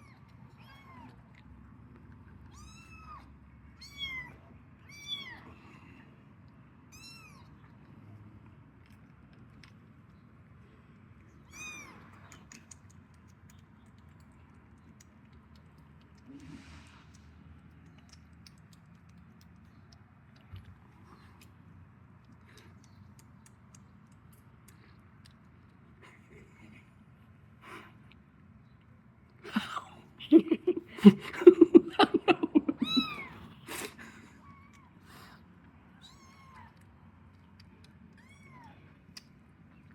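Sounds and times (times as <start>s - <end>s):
kitten meowing: 0.0s - 1.2s, 2.5s - 5.4s, 6.9s - 7.5s, 11.4s - 12.4s, 32.8s - 33.5s, 36.0s - 36.8s, 38.1s - 38.8s
faint clicks: 12.0s - 20.7s
kittens mewing: 31.4s - 35.4s.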